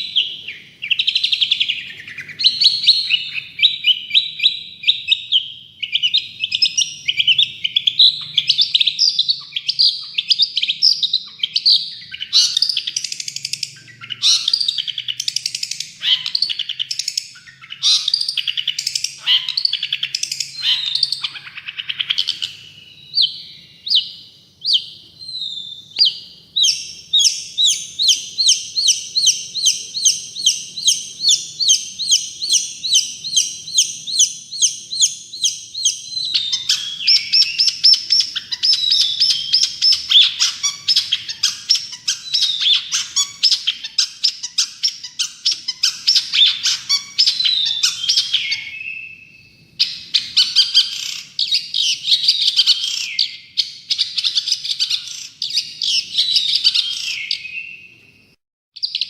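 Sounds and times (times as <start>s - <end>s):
sharp repeated bird notes: 0.0s - 59.0s
shrike song chattering: 25.8s - 48.8s.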